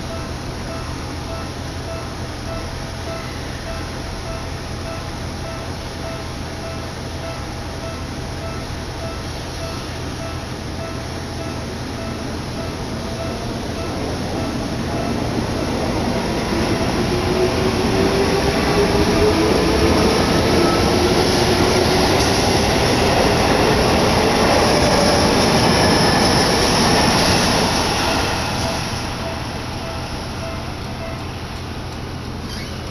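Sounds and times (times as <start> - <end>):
electric train rolling past: 0.0 - 32.9
level crossing bell ringing: 28.0 - 31.6.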